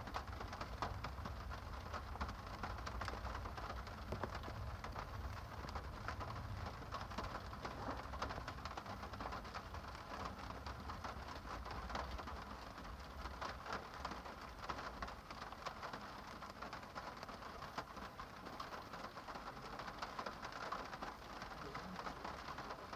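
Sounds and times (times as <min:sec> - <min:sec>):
rain falling on a surface: 0:00.0 - 0:22.9.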